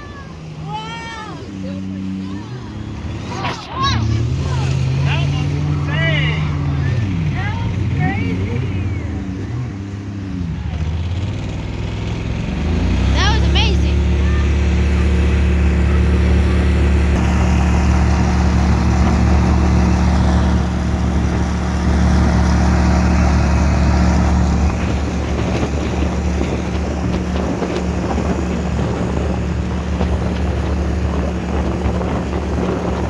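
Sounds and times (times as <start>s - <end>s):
motorboat engine humming: 0.0s - 33.0s.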